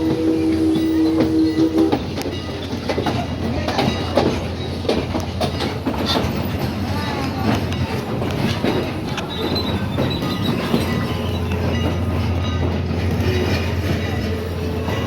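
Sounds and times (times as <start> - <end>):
steam locomotive whistle: 0.0 - 2.3
train coach rattling over rail joints: 0.0 - 15.0.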